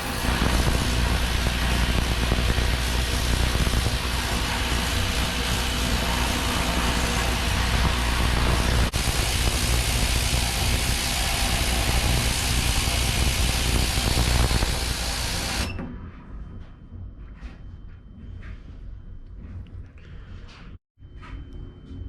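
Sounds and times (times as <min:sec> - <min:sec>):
ultrasonic cleaner hissing: 0:00.0 - 0:15.7
low hum: 0:00.0 - 0:22.0.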